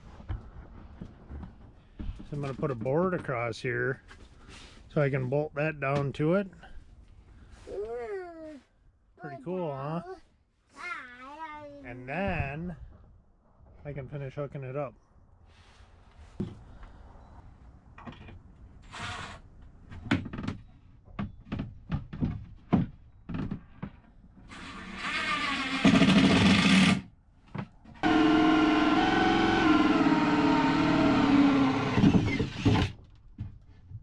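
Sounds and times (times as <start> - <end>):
electric power tool motor: 24.6 - 27.0, 28.0 - 32.9.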